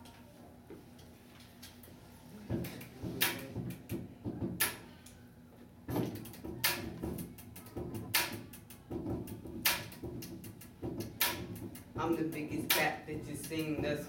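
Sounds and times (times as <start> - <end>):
snare or clap hits: 2.7 - 3.9, 6.1 - 8.5, 9.6 - 12.0, 12.7 - 12.9
hip-hop beat: 6.2 - 14.0.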